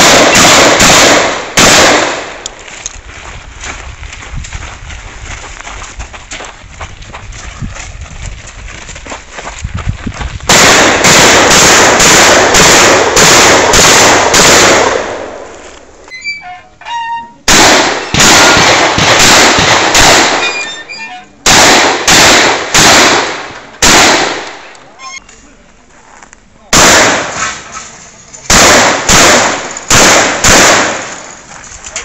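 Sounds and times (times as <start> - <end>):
shotgun shots: 0.0 - 2.4, 10.5 - 15.5, 17.4 - 20.6, 21.4 - 24.6, 26.7 - 27.7, 28.5 - 31.3.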